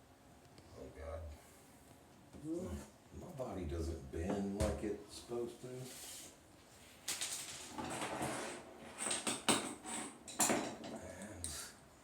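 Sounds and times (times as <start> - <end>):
tools scraping and rattling: 7.1 - 11.1.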